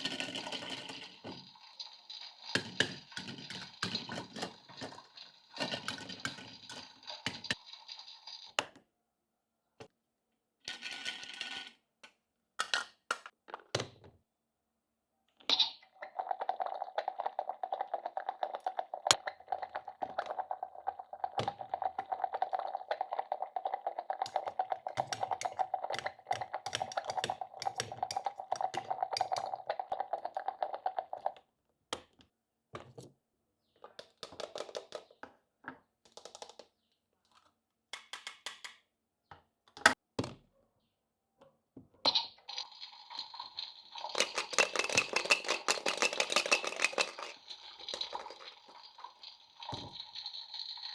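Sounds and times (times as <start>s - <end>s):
plastic clicks and taps: 37.9s - 40.0s
plastic toy pieces rattling: 44.0s - 49.2s.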